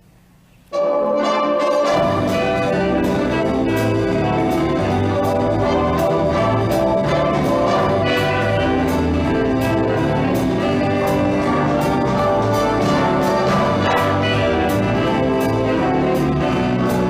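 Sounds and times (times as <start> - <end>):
swing big band music with brass: 0.8 - 17.0.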